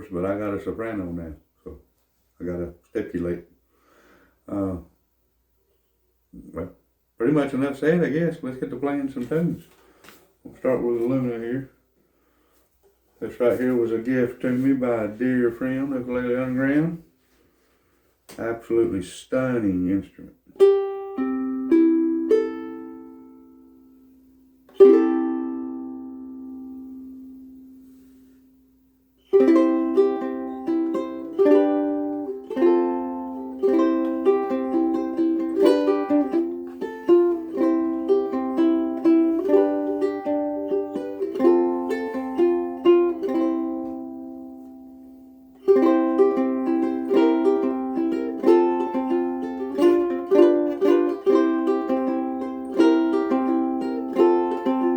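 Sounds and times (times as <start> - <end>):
ukulele chords and picked notes: 20.4 - 54.9.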